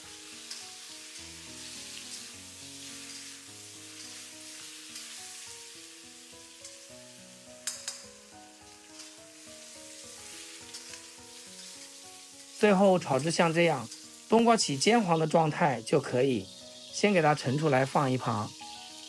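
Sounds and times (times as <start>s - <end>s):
melon sizzling in a wok: 0.0s - 19.0s
utensil clacking against wok: 7.6s - 8.1s, 13.2s - 14.3s.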